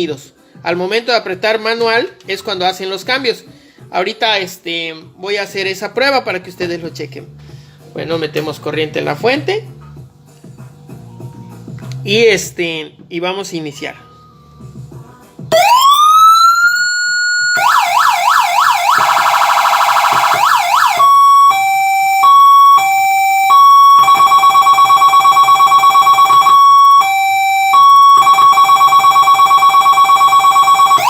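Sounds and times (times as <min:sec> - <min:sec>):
electronic siren cycling tones: 0:15.5 - 0:31.0.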